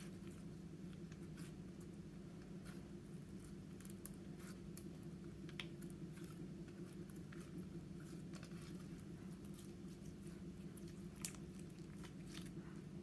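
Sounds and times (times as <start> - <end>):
slime squishing: 0.0 - 13.0
steady low hum: 0.0 - 13.0.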